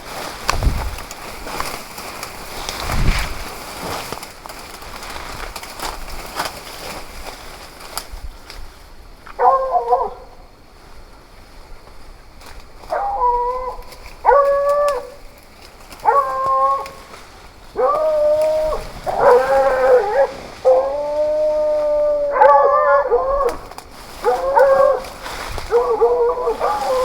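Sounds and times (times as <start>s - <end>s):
hunting dog baying: 9.3s - 10.5s, 12.8s - 27.0s.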